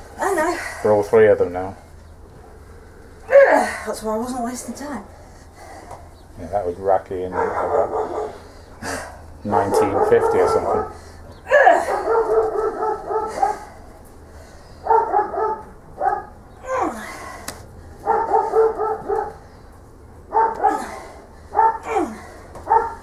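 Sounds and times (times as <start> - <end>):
dog barking and yipping: 7.3 - 8.4, 9.4 - 13.7, 14.8 - 16.4, 18.0 - 19.4, 20.3 - 20.8, 21.5 - 21.9, 22.7 - 23.0.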